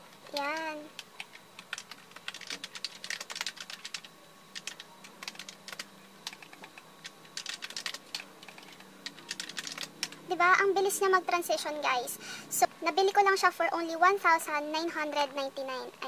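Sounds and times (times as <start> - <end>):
keyboard keys clicking: 0.3 - 10.2.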